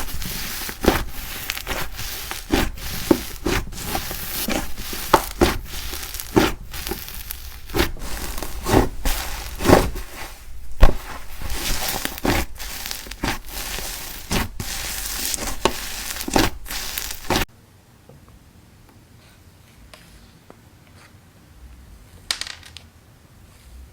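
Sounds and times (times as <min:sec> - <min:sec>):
slime popping: 0:00.0 - 0:17.5
slime squeezed by hand: 0:00.0 - 0:17.5.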